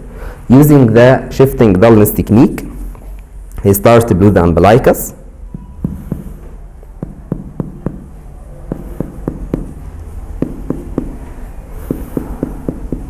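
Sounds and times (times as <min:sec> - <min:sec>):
finger tapping on belly: 0:05.5 - 0:06.4, 0:07.0 - 0:08.1, 0:08.7 - 0:09.8, 0:10.4 - 0:11.2, 0:11.8 - 0:13.0.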